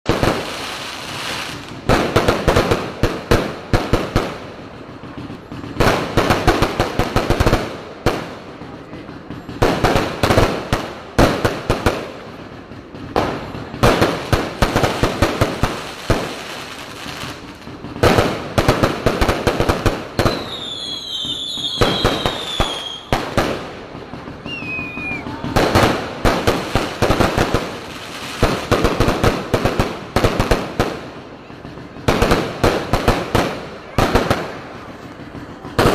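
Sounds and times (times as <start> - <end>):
fireworks banging and crackling: 0.0 - 35.9.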